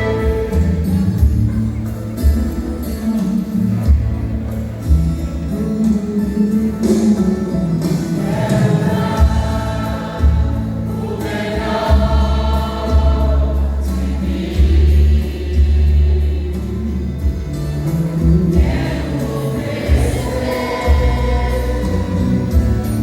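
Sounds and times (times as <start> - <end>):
instrumental backing with strong bass: 0.0 - 23.0
vocal group singing in harmony: 7.8 - 23.0.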